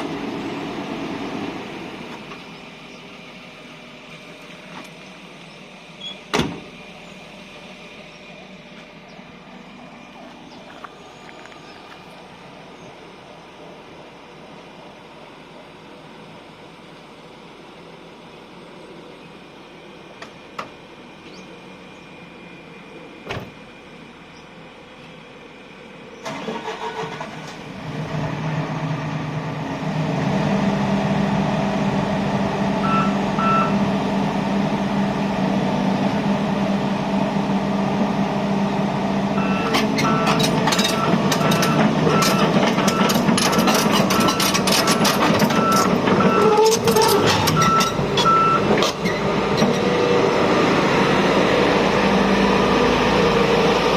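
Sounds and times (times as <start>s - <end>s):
excavator diesel engine: 0.0s - 53.9s
warning alarm beeping: 32.8s - 33.8s, 39.4s - 43.2s, 47.5s - 48.7s
machine clattering and clanking: 39.7s - 49.8s.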